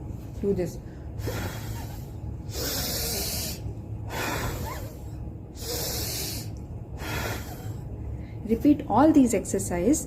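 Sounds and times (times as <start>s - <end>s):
person blowing hard through mouth: 1.2s - 5.0s, 5.6s - 7.7s.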